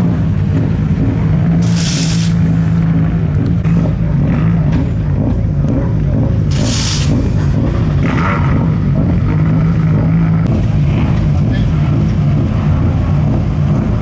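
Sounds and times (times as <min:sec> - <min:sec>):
rally car engine revving: 0:00.0 - 0:14.0
short hissing burst: 0:01.6 - 0:02.8, 0:06.5 - 0:07.6.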